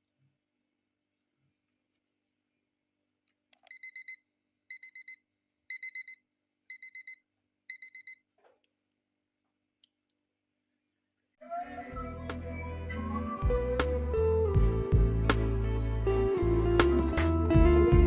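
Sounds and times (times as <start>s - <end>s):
electronic alarm beeping: 3.7s - 8.2s.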